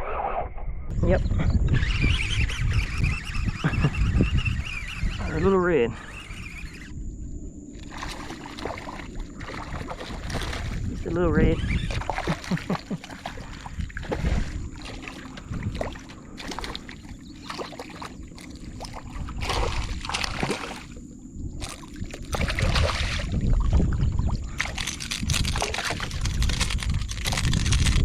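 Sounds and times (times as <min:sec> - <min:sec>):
water sloshing against kayak: 0:07.7 - 0:28.0.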